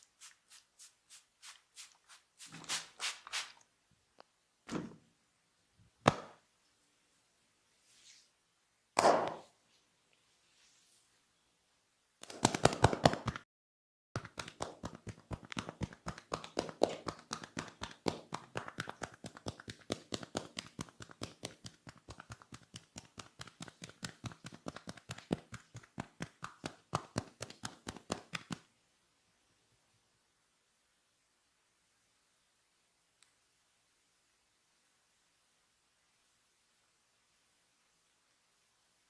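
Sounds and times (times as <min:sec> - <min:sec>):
hands slapping on skin: 0:06.0 - 0:06.4, 0:12.2 - 0:13.4, 0:14.2 - 0:28.7.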